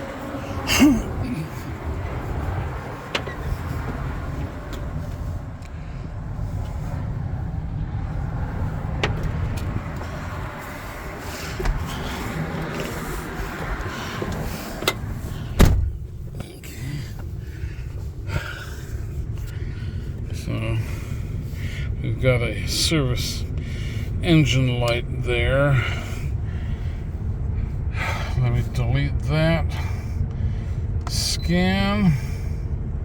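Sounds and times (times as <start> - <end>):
truck engine rumbling: 0.0 - 33.0
heavy thump: 9.0 - 9.8, 14.2 - 16.1.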